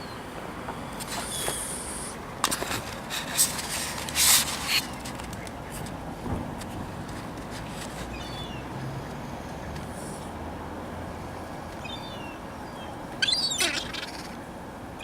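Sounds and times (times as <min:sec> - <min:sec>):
outdoor background noise: 0:00.0 - 0:15.0
birds chirping: 0:08.0 - 0:10.3, 0:11.4 - 0:15.0
loud harsh bird call: 0:11.8 - 0:14.5.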